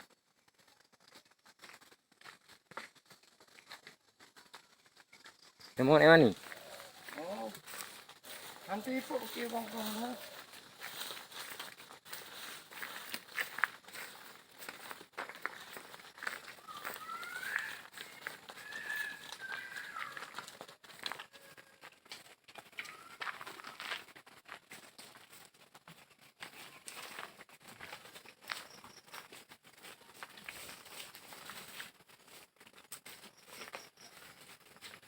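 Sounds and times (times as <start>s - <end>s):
birds chirping: 5.4s - 11.0s, 16.4s - 20.5s.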